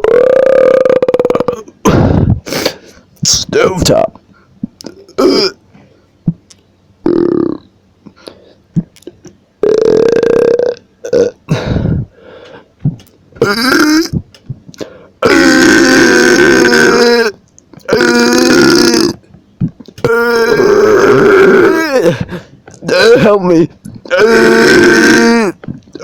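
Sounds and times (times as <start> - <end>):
man burping: 0.0 - 2.3, 4.8 - 5.6, 7.0 - 7.7, 9.2 - 12.1, 13.4 - 14.3, 15.2 - 19.2, 22.8 - 23.4, 24.0 - 26.0.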